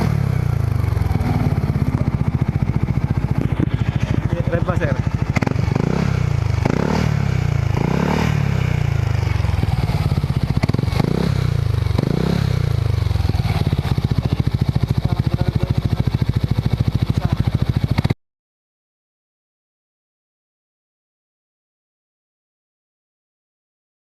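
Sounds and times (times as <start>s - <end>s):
scooter engine revving and idling: 0.0s - 18.2s.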